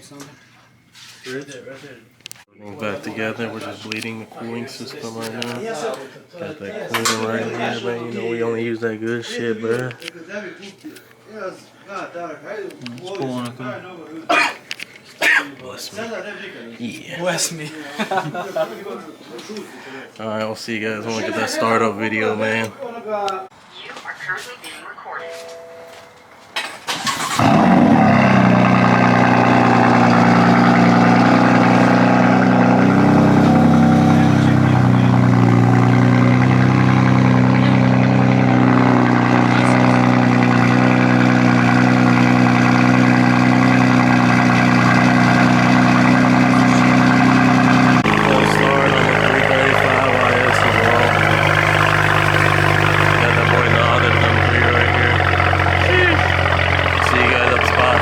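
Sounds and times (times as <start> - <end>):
car engine starting and idling: 2.8 - 5.7, 7.0 - 9.2, 25.9 - 58.0.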